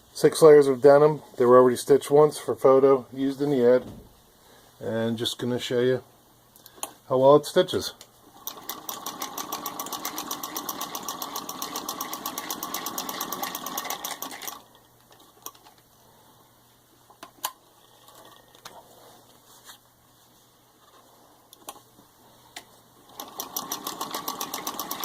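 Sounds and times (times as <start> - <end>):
sewing machine clatter: 8.4 - 15.8, 23.0 - 25.0.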